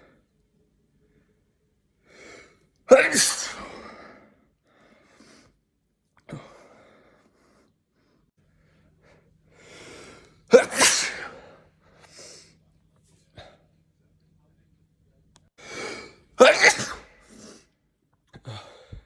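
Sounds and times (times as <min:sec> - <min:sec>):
person sneezing: 0:02.9 - 0:04.2, 0:10.5 - 0:12.4, 0:15.8 - 0:17.7.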